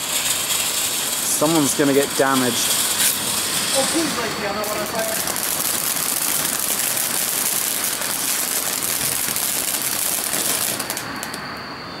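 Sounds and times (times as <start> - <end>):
firework sparks crackling: 0.0 - 11.7.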